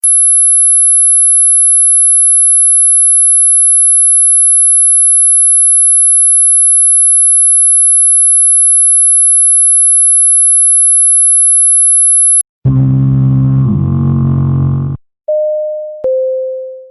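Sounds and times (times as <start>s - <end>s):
deep low horn-like note: 12.7s - 15.0s.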